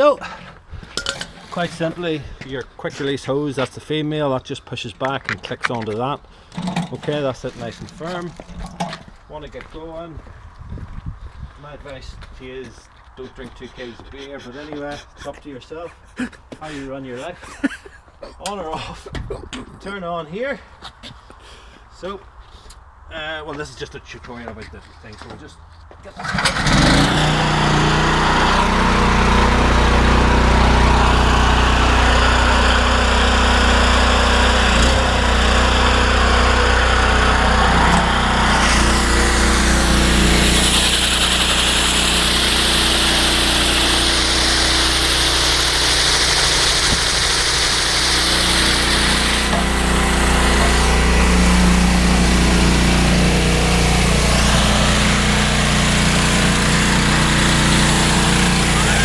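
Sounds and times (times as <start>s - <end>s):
pressure washer engine running: 26.2s - 59.0s
high-pressure water spray hiss: 39.8s - 51.7s.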